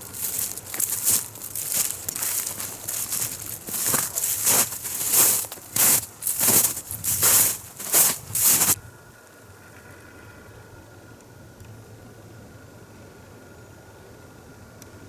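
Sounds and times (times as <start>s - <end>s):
footsteps crunching on forest floor: 0.0s - 8.8s.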